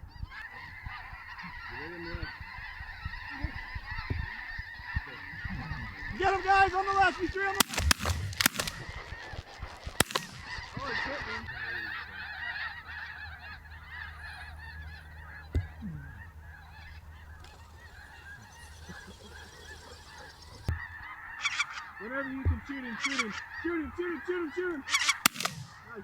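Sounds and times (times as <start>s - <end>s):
geese honking: 0.0s - 26.0s
shotgun shots: 7.0s - 11.3s, 24.9s - 26.0s.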